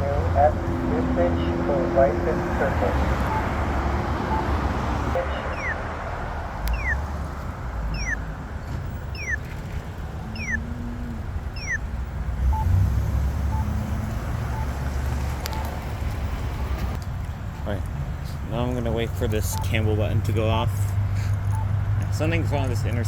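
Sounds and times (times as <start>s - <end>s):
crosswalk locator beeps: 0.0s - 6.0s, 6.6s - 9.6s, 10.2s - 17.8s, 18.5s - 20.5s, 21.5s - 22.4s
road traffic rumble: 0.0s - 23.0s
falling electronic chirps: 5.3s - 5.8s, 6.7s - 7.1s, 7.9s - 8.2s, 9.1s - 9.4s, 10.3s - 10.7s, 11.6s - 11.8s.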